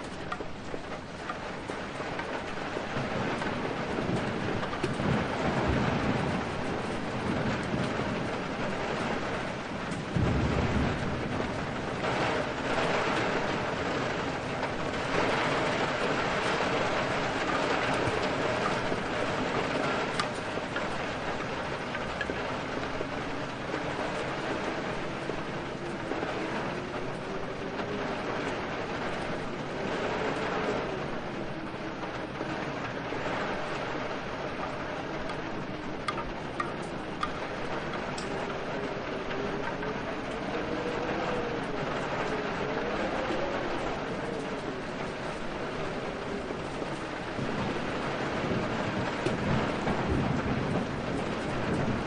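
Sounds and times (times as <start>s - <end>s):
heavy rain: 0.0s - 52.0s
low roll of thunder: 0.0s - 52.0s.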